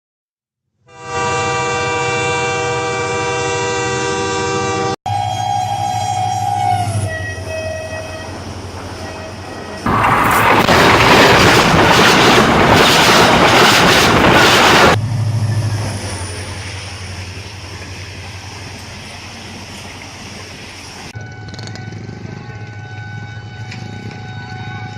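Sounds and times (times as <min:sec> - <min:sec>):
train horn: 0:00.9 - 0:10.0, 0:21.2 - 0:24.9
train rumble: 0:05.1 - 0:24.9
rush of train speeding past: 0:05.7 - 0:24.8.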